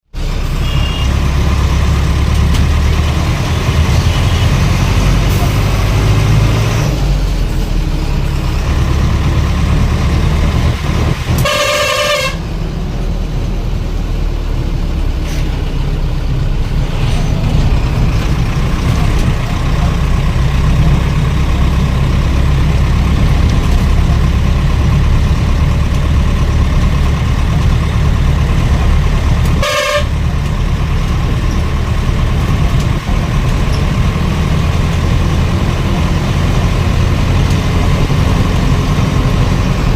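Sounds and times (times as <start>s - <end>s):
vehicle engine rumbling: 0.0s - 39.9s
vehicle horn blast: 0.5s - 1.2s, 11.4s - 12.4s, 29.6s - 30.2s.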